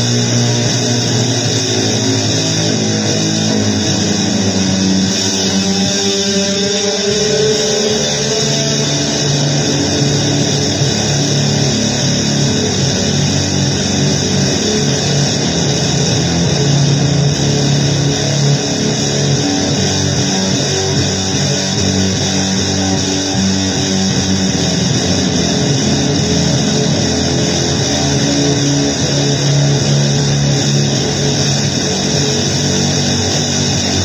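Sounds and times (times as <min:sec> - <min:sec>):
distorted guitar noise music: 0:00.0 - 0:34.0.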